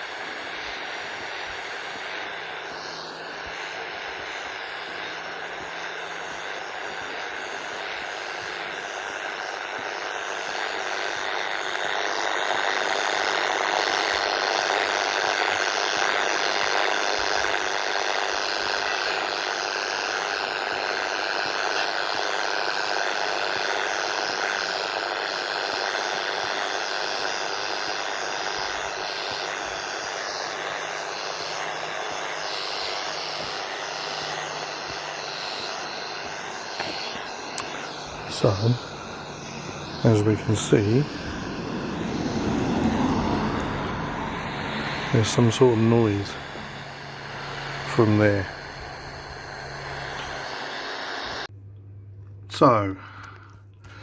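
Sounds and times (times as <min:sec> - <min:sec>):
radio static hiss: 0:00.0 - 0:51.5, 0:52.5 - 0:54.0.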